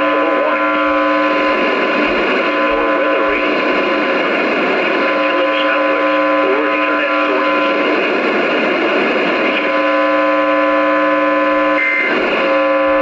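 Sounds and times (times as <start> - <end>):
faint voice on radio: 0.0 - 4.2, 4.8 - 12.2
multi-tone radio whine: 0.0 - 13.0
radio static hiss: 0.0 - 13.0.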